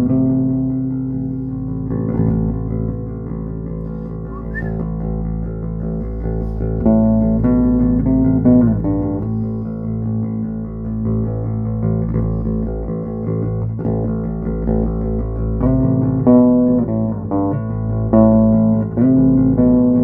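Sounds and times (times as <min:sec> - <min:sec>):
electric bass guitar notes: 0:00.0 - 0:20.0.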